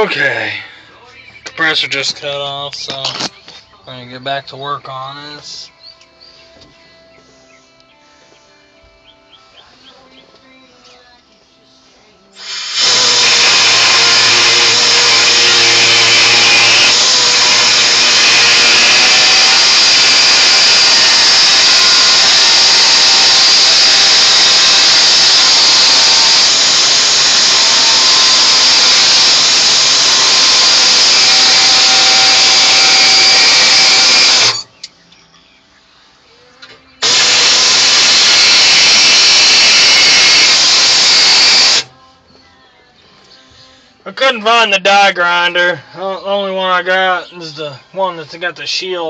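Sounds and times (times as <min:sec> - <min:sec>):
power tool whining: 0:12.4 - 0:34.7, 0:37.0 - 0:41.9.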